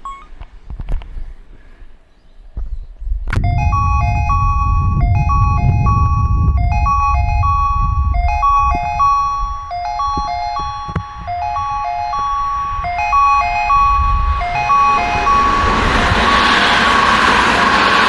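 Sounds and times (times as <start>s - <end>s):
arriving train: 3.3s - 18.0s
train approach chime: 3.4s - 18.0s.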